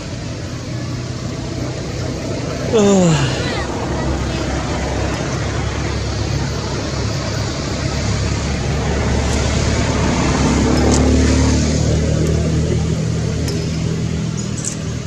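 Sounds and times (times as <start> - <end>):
vehicle engine passing: 0.0 - 13.5.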